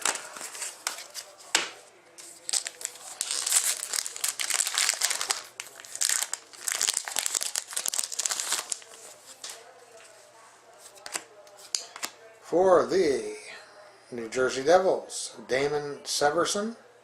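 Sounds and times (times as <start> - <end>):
plastic packaging crinkling: 2.2 - 9.7.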